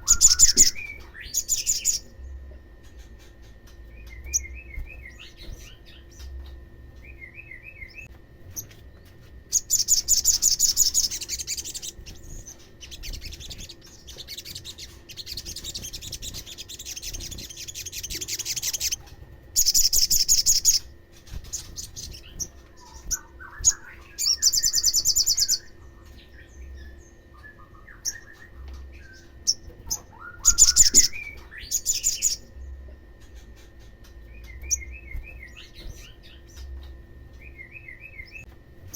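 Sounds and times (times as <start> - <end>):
sunbird high trills: 0.0 - 2.2
bird twittering: 0.0 - 8.7, 9.5 - 38.5.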